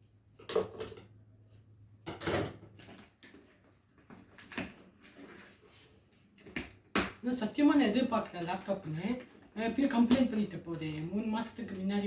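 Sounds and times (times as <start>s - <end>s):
packaging rustling and scraping: 2.8s - 6.5s.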